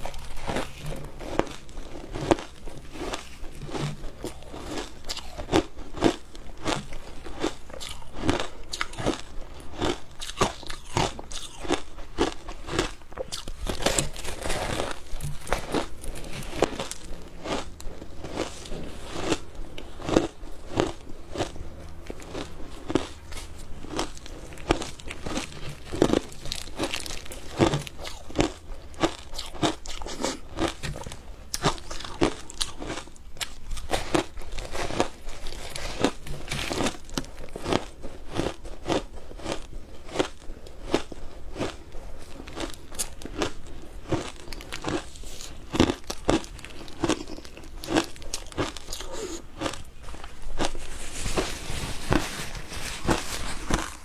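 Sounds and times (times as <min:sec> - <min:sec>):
ice being chewed: 0:00.0 - 0:54.0.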